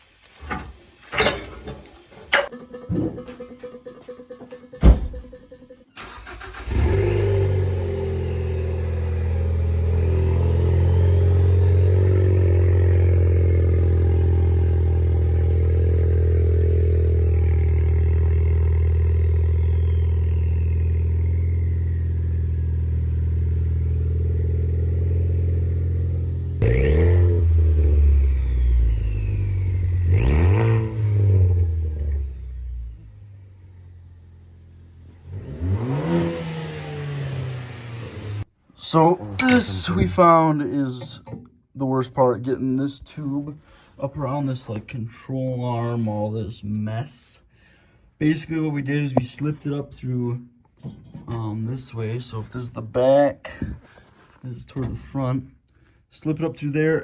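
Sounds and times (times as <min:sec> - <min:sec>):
car engine idling and revving: 0:04.8 - 0:38.5.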